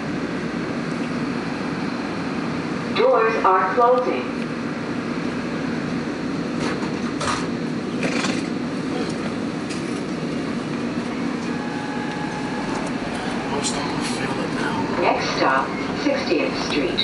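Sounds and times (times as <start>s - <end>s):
subway car low rumble: 0.0s - 17.0s
faint steady whine: 9.0s - 17.0s.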